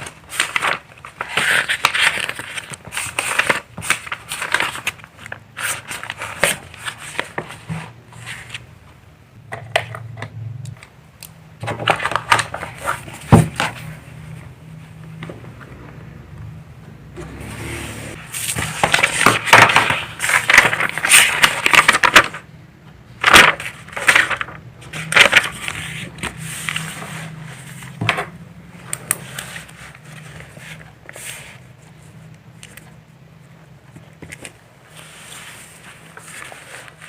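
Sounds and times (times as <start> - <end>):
rustling and scraping handling noise: 0.0 - 10.0, 17.2 - 22.4, 23.2 - 33.0, 33.7 - 37.0.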